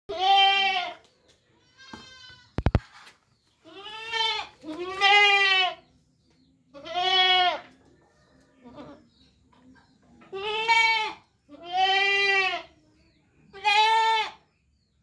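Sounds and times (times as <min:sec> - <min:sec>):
goat bleating: 0:00.1 - 0:01.0, 0:01.7 - 0:02.7, 0:03.6 - 0:05.8, 0:06.7 - 0:07.7, 0:10.3 - 0:12.7, 0:13.5 - 0:14.4.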